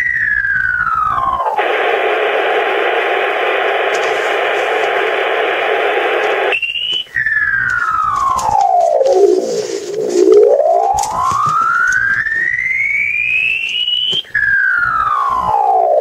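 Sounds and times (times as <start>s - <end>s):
radio static hiss: 1.2s - 14.3s
falling whistle: 6.4s - 16.0s.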